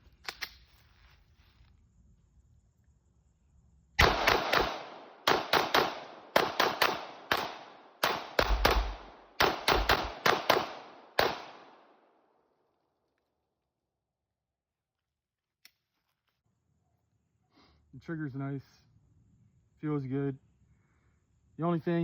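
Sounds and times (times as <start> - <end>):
gunshot echo: 4.0 - 12.0
pistol shots: 4.0 - 12.0.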